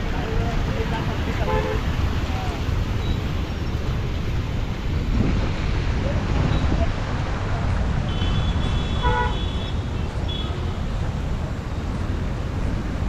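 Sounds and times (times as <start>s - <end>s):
traffic rumble: 0.0s - 13.0s
high-pitched car horn: 8.1s - 10.7s.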